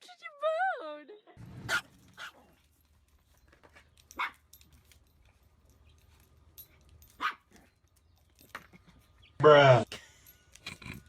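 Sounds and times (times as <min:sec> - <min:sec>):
small dog barking: 0:04.1 - 0:04.5, 0:07.2 - 0:07.6.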